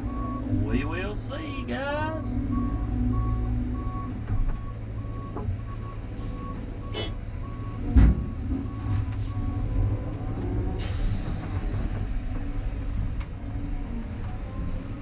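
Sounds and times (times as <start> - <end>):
heavy diesel engine running: 0.0 - 15.0
backup alarm beeping: 2.5 - 7.8.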